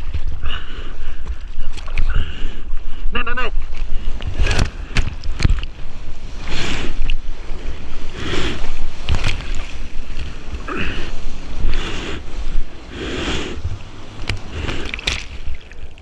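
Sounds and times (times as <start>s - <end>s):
seawater splashing and sloshing: 0.0s - 16.0s
paddling swish: 3.6s - 16.0s.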